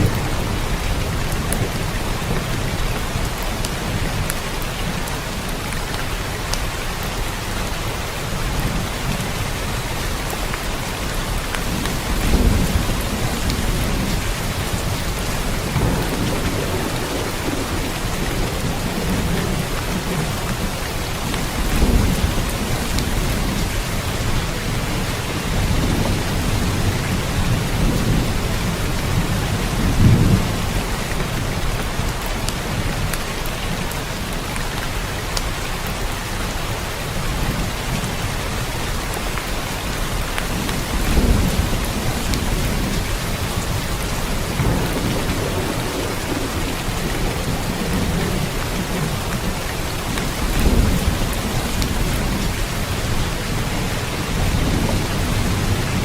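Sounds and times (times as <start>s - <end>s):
rolling thunder: 0.0s - 5.1s, 11.3s - 33.1s, 40.1s - 56.0s
steady rain falling: 0.0s - 56.0s.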